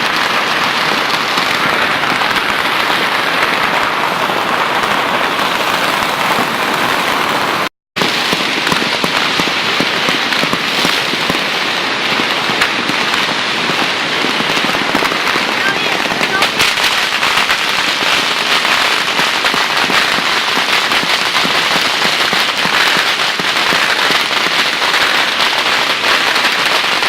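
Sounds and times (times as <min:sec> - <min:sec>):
firecrackers crackling: 0:00.0 - 0:27.0.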